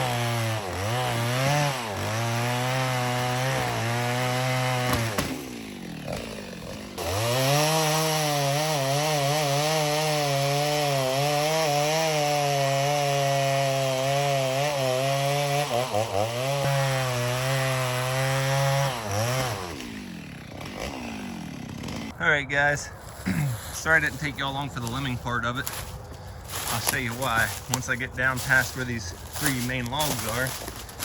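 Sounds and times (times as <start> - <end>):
chainsaw cutting through wood: 0.0 - 22.2, 22.8 - 31.0.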